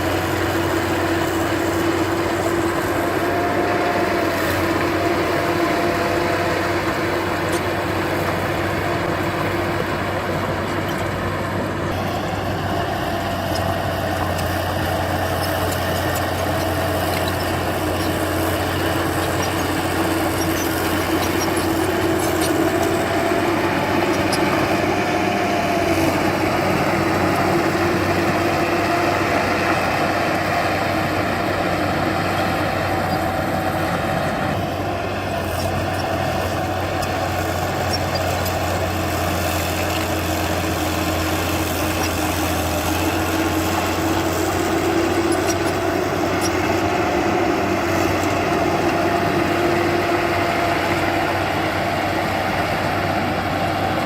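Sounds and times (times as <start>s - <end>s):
heavy machine engine running: 0.0s - 54.0s.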